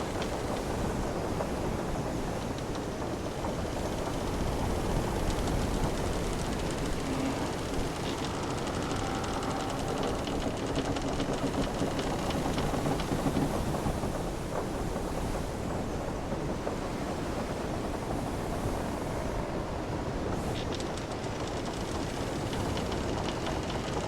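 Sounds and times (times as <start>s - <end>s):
wooden ship timbers creaking: 0.0s - 13.7s, 20.4s - 24.0s
wind: 0.0s - 24.0s.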